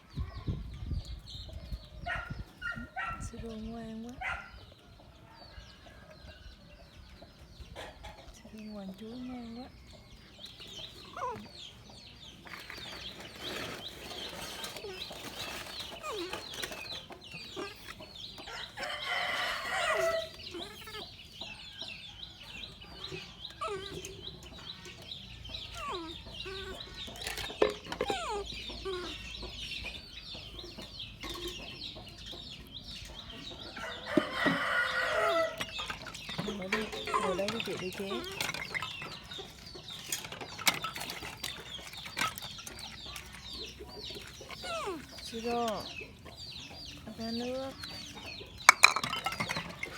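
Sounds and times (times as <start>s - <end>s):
chickens clucking: 0.1s - 49.9s
rooster crowing: 18.5s - 20.4s, 33.8s - 35.6s.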